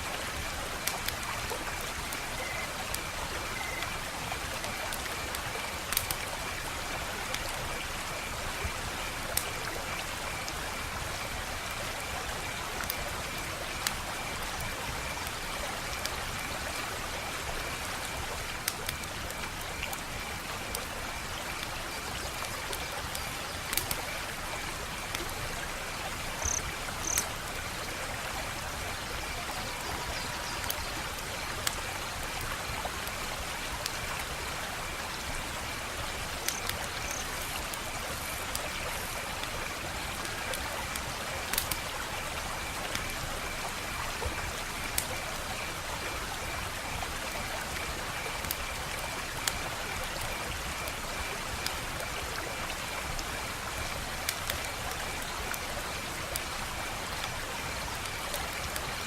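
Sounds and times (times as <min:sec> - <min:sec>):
wood fire crackling: 0:00.2 - 0:08.6, 0:22.4 - 0:25.4, 0:30.6 - 0:59.0
sharp pops and snaps of fire: 0:00.8 - 0:06.3, 0:18.5 - 0:20.1, 0:22.4 - 0:25.3, 0:26.4 - 0:27.6, 0:36.3 - 0:41.9, 0:47.6 - 0:51.0, 0:52.9 - 0:55.6.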